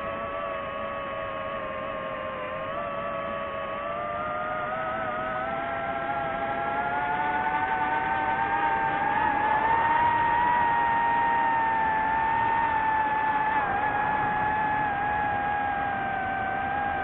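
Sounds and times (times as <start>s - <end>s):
drone propellers whining: 0.0s - 17.0s.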